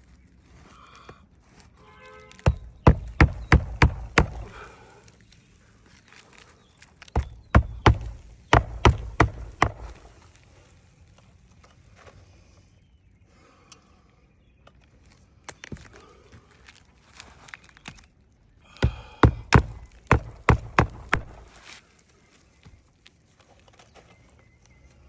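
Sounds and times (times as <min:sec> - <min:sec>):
hammer driving nails: 0:02.5 - 0:04.7, 0:07.2 - 0:10.1, 0:18.8 - 0:21.6.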